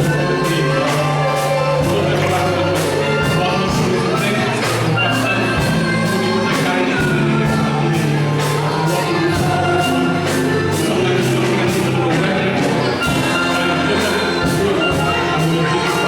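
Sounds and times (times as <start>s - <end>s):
gospel singing: 0.0s - 16.0s
held bass notes: 0.0s - 16.0s
steady drum beat: 0.0s - 16.0s.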